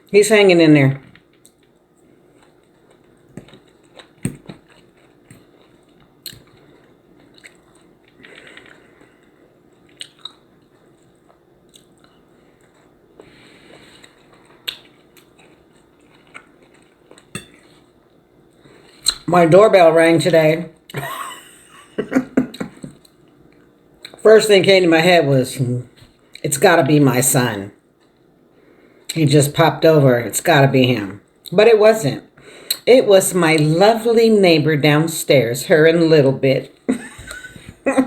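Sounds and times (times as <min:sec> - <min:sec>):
person chewing: 0:01.1 - 0:19.3.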